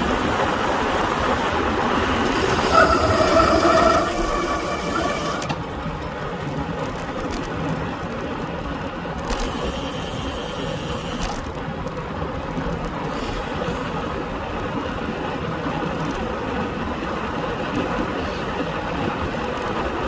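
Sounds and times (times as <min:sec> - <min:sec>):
bike tyre noise: 0:00.0 - 0:14.2
bike disc brakes squealing: 0:01.2 - 0:05.5.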